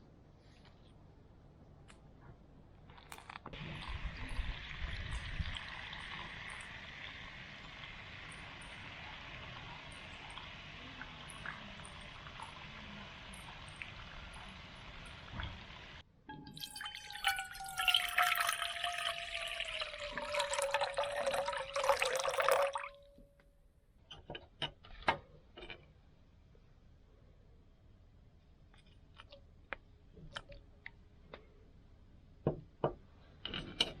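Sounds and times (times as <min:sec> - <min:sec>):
water pouring into a vessel: 0:03.6 - 0:23.2.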